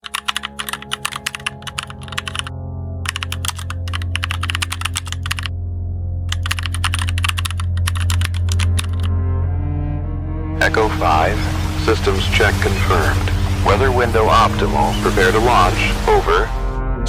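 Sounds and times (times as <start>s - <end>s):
rapid keyboard typing clicks: 0.0s - 2.5s, 3.1s - 5.5s, 6.3s - 9.1s
low steady drone: 1.5s - 17.0s.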